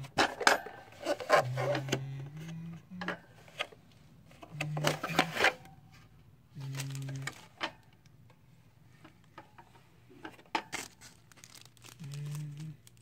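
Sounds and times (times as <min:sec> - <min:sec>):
packaging crinkling and tearing: 0:06.6 - 0:07.6, 0:10.7 - 0:13.0.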